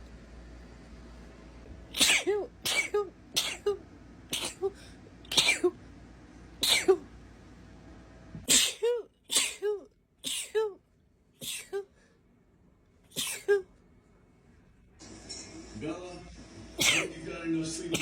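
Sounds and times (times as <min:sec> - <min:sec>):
woman sneezing: 0:01.9 - 0:05.8, 0:06.6 - 0:07.0, 0:08.5 - 0:10.8, 0:11.4 - 0:11.9, 0:13.1 - 0:13.7.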